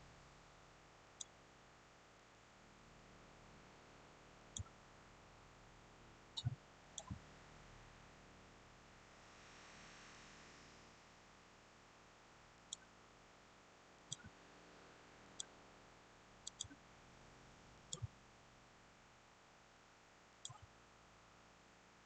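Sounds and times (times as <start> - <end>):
computer mouse clicking: 6.4 - 7.2, 14.1 - 14.4, 16.5 - 16.8, 20.4 - 20.7.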